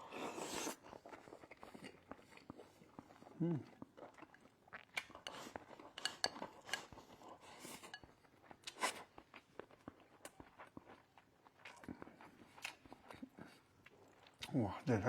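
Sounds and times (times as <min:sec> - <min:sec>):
utensils clinking against a bowl: 0:06.0 - 0:07.0.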